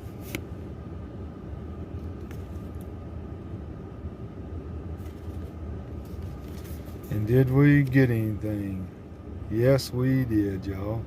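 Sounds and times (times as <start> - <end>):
low background rumble: 0.0 - 11.0
trading cards rustling: 5.0 - 7.2.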